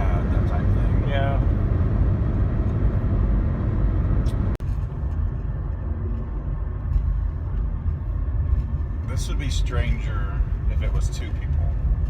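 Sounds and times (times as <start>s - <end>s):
vehicle road noise rumble: 0.0s - 12.0s.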